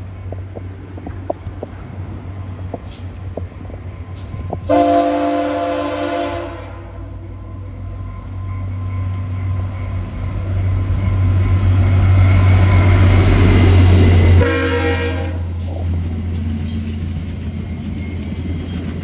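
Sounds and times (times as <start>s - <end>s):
diesel locomotive drone: 0.0s - 19.0s
train air horn chord: 4.7s - 7.1s, 14.4s - 15.5s.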